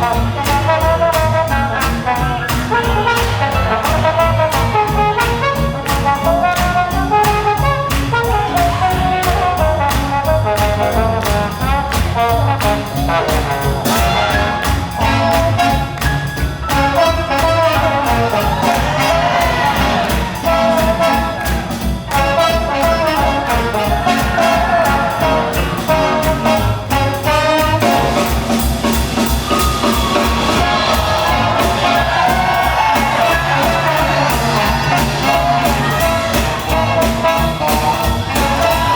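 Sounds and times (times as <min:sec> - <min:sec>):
swing jazz band playing: 0:00.0 - 0:38.9
trumpets and trombones: 0:00.0 - 0:38.9.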